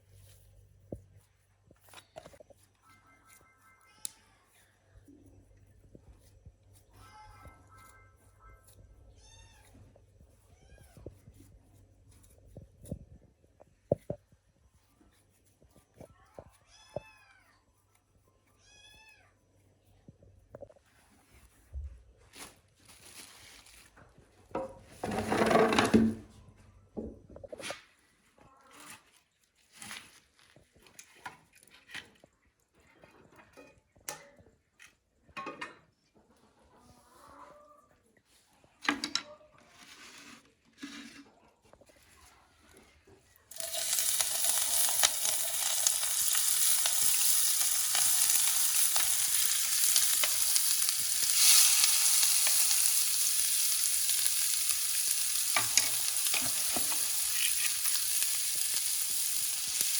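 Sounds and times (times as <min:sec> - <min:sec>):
flatbread sizzling on a griddle: 0:43.5 - 0:59.9.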